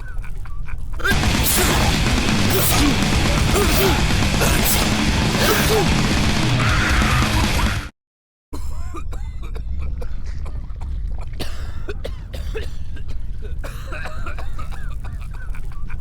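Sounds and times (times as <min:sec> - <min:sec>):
recorded voice coughing: 0:01.0 - 0:06.6, 0:08.6 - 0:15.6
steady low hum: 0:01.1 - 0:06.6.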